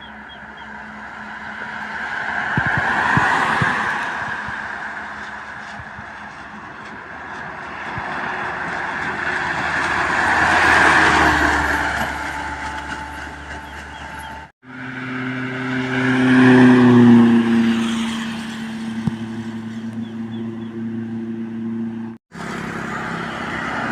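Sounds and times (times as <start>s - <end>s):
highway traffic passing: 0.0s - 23.9s
truck engine droning past: 0.0s - 23.9s.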